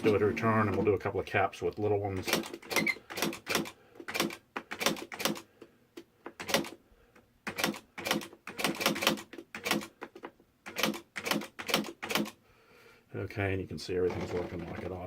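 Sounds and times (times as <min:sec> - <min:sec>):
typewriter keys striking: 0:07.5 - 0:10.0, 0:10.7 - 0:12.4.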